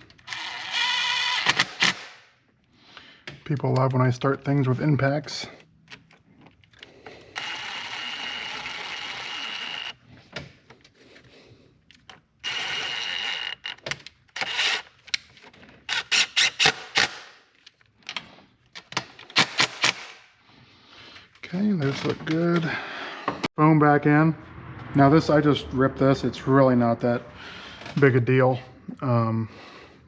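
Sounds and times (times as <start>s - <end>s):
impact tool whining: 7.3s - 10.1s, 12.4s - 14.9s.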